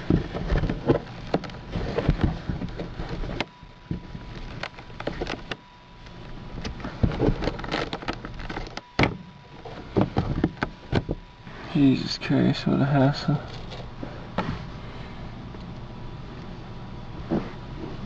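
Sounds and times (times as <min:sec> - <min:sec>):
plastic cover clicking and snapping: 0:06.6 - 0:09.2.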